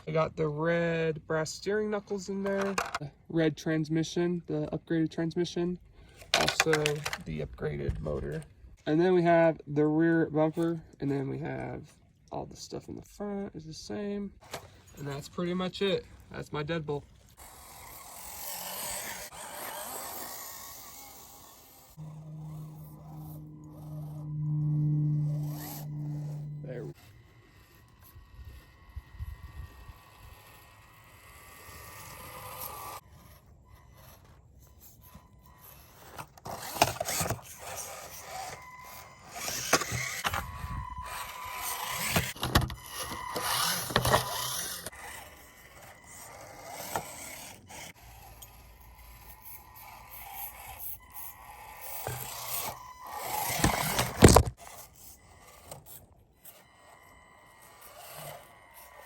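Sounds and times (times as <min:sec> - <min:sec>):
small electric motor whining: 0:16.9 - 0:59.0.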